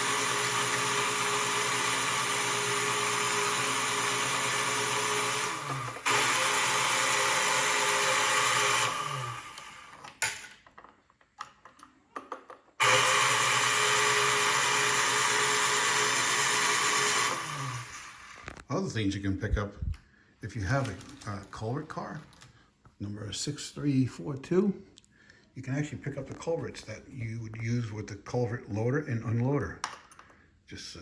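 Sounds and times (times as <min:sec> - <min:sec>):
electric motor whirring: 0:00.0 - 0:10.0, 0:12.8 - 0:18.6.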